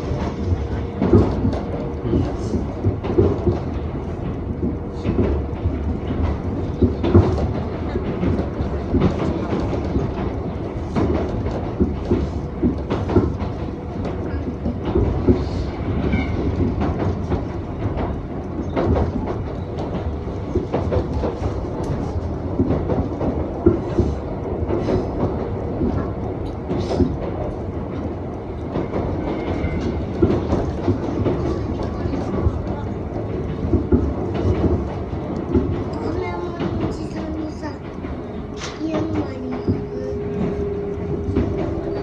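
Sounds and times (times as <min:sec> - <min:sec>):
train rumbling: 0:00.0 - 0:42.0
wheels clicking over rail joints: 0:00.0 - 0:42.0.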